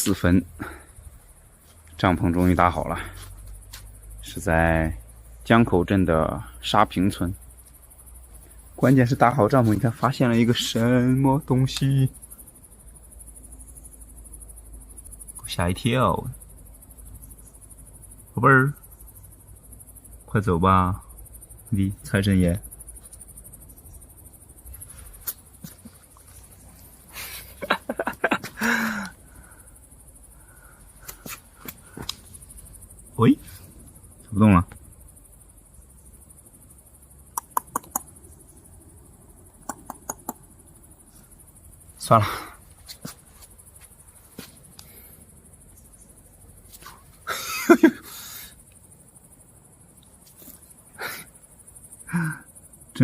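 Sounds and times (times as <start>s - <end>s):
crickets chirping: 0.0s - 53.0s
insects trilling: 0.0s - 53.0s
sharp taps and scuffs: 3.2s - 4.0s, 25.2s - 26.4s, 31.0s - 32.3s, 42.7s - 44.9s.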